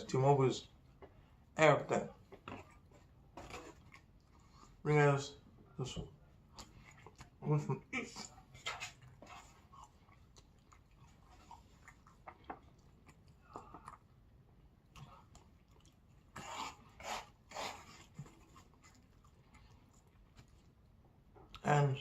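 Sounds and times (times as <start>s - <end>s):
person chewing: 2.4s - 4.8s, 6.4s - 7.4s, 8.0s - 21.6s.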